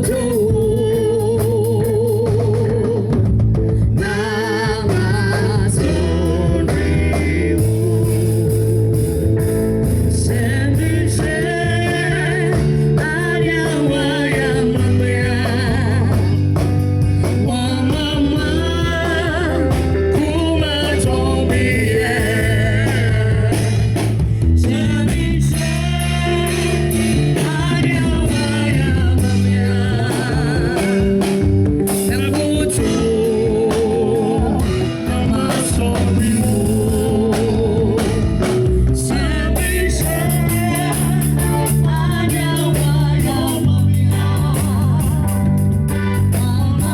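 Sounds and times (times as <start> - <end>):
band playing gospel-style music: 0.0 - 46.9
drums: 0.0 - 46.9
guitar: 0.0 - 46.9
person singing with vibrato: 0.0 - 46.9
sustained bass notes: 0.0 - 46.9.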